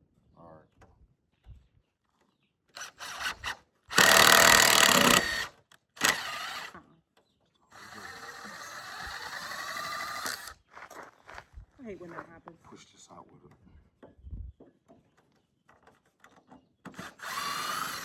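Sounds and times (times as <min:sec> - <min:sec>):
power drill driving screws into wood: 0:02.7 - 0:06.8, 0:07.7 - 0:10.6, 0:16.9 - 0:18.0.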